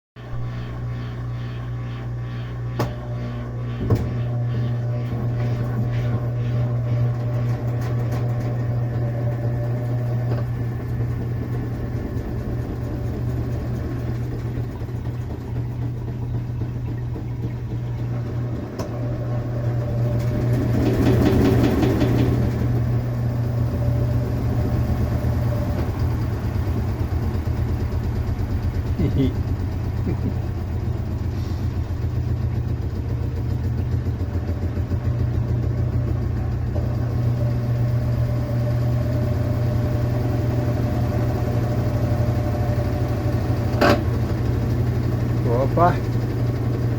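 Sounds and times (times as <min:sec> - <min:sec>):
washing machine spin drone: 0:00.2 - 0:46.9
sharp knocks: 0:03.8 - 0:04.3.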